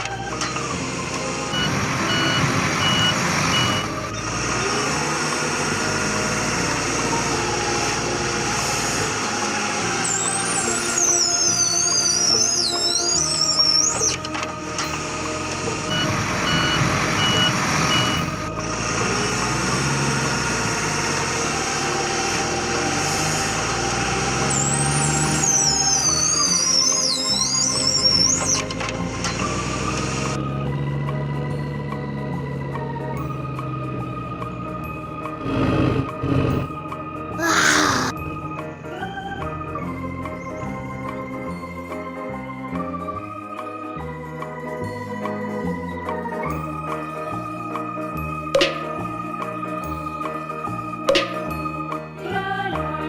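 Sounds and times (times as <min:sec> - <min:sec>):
heavy vehicle engine running: 0:00.0 - 0:12.4, 0:13.2 - 0:37.3
reversing alarm beeping: 0:01.5 - 0:04.3, 0:15.9 - 0:18.4.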